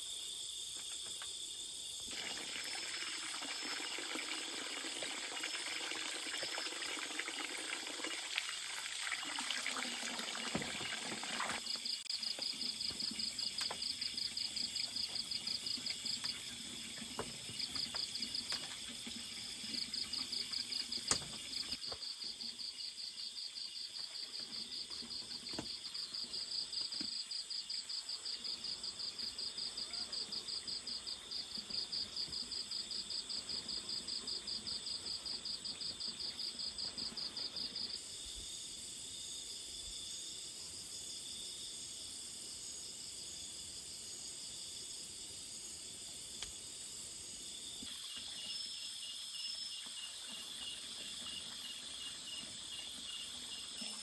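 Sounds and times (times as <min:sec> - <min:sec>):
cricket chorus trilling: 0:11.6 - 0:54.0.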